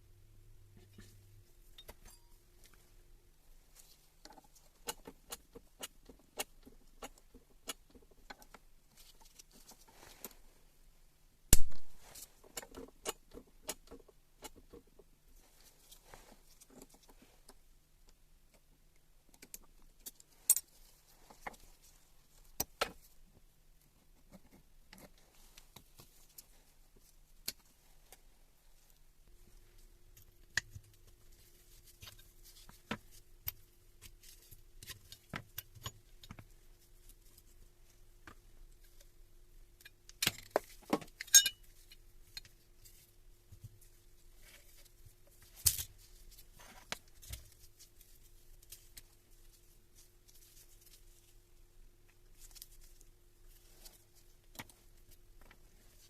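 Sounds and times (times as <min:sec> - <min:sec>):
faint steady hum: 0:00.0 - 0:56.0
metal tools clinking and tapping: 0:01.7 - 0:02.4, 0:41.2 - 0:41.7.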